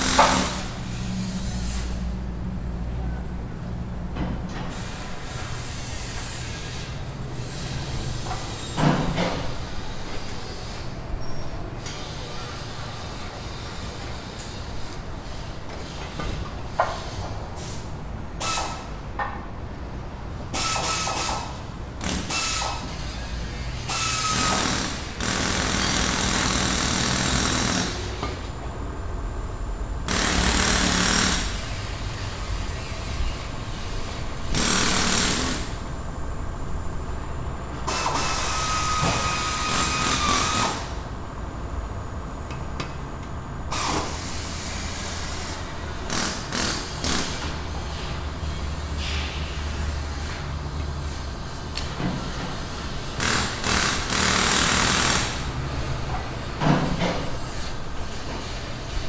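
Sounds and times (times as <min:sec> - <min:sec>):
air-powered tool bursts: 0:00.0 - 0:02.0, 0:18.4 - 0:18.9, 0:20.5 - 0:28.3, 0:30.1 - 0:32.2, 0:34.4 - 0:35.8, 0:37.9 - 0:41.0, 0:43.7 - 0:47.5, 0:53.1 - 0:55.5.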